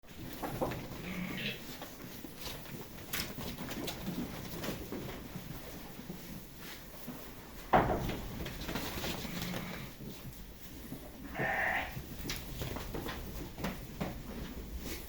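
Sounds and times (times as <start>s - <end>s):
sheep bleating: 1.0s - 1.6s, 11.2s - 12.0s.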